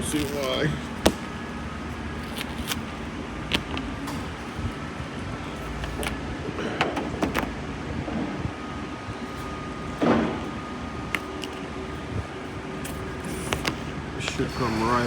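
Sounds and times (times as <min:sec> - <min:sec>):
plastic scrape: 0:12.8 - 0:14.5.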